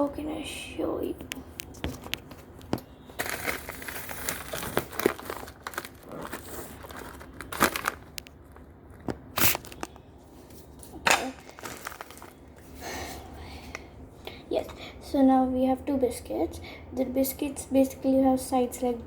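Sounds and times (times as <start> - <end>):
packaging crinkling: 3.0 - 10.0, 10.8 - 12.7.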